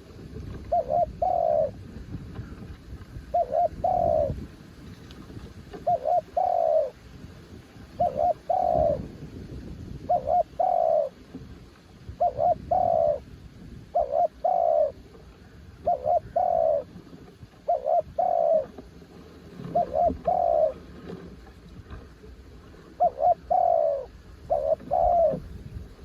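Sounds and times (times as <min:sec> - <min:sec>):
dove cooing: 0:00.0 - 0:01.8, 0:02.4 - 0:04.4, 0:05.8 - 0:07.0, 0:07.9 - 0:09.1, 0:10.0 - 0:11.2, 0:12.1 - 0:13.3, 0:13.9 - 0:17.0, 0:17.6 - 0:18.9, 0:19.6 - 0:21.2, 0:23.0 - 0:25.6.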